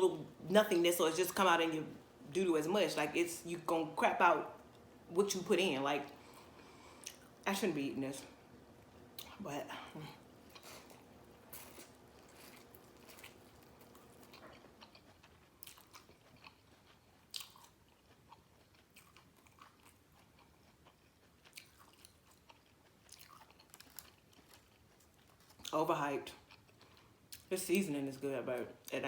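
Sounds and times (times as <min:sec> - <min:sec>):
chewing corn on the cob: 0:10.4 - 0:27.5.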